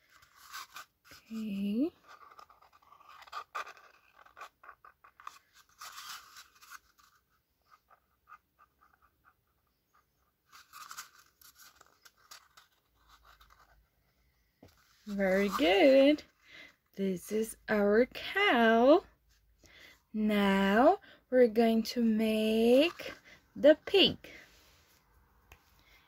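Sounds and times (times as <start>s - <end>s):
marker pen scratching on paper: 0.0s - 13.8s, 15.0s - 16.2s.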